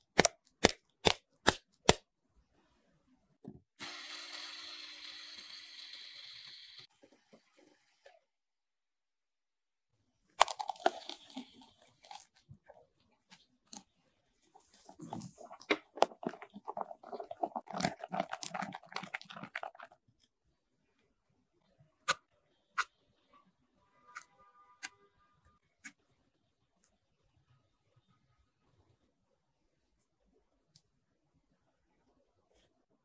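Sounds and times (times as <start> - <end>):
food crackling and crunching: 10.4 - 12.7, 14.6 - 20.0.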